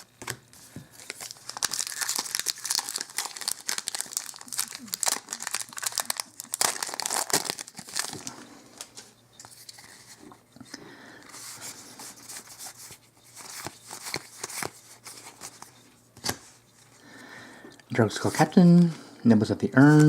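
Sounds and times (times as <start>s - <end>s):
wrapper tearing and crinkling: 1.0s - 8.3s.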